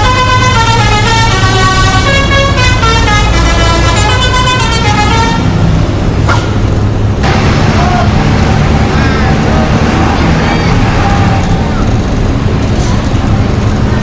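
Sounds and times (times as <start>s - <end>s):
bus musical horn: 0.0s - 6.6s
bus engine rumble: 0.0s - 14.0s
road noise: 0.0s - 14.0s.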